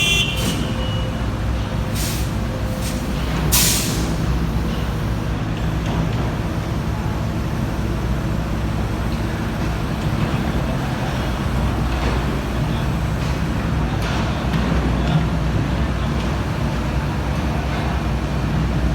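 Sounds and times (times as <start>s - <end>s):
short hisses: 0.0s - 1.0s, 1.9s - 4.2s
diesel engine running: 0.0s - 18.9s.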